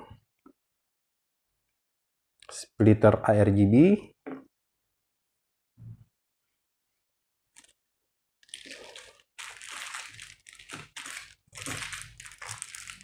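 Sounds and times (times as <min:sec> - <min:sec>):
plastic packaging crinkling: 0:07.6 - 0:07.8, 0:08.4 - 0:13.0.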